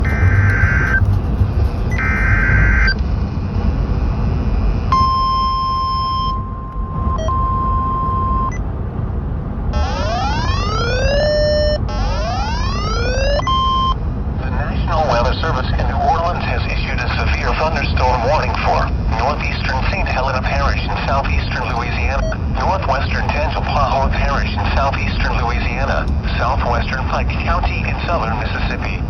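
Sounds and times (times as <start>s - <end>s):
digital data bursts: 0.0s - 3.0s, 9.8s - 14.0s
rising swept tones: 0.0s - 3.0s, 9.7s - 14.0s
steady high alert tone: 0.0s - 3.0s, 4.9s - 8.6s, 9.7s - 14.0s
radio hiss: 14.4s - 29.0s.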